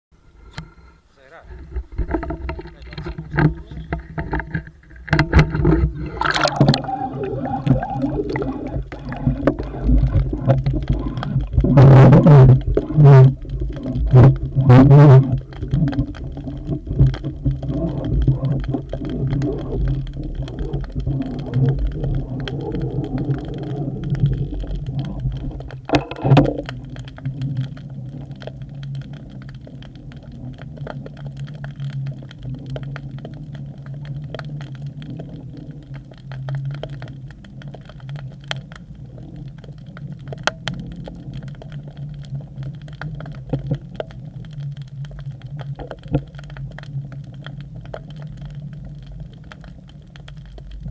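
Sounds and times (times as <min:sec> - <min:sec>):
underwater low hum and rumble: 0:00.2 - 0:50.9
faint clicks: 0:00.4 - 0:50.9.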